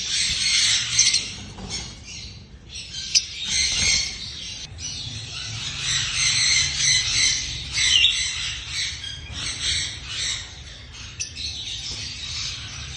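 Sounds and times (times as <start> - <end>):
lovebird chirping: 0.0 - 12.9.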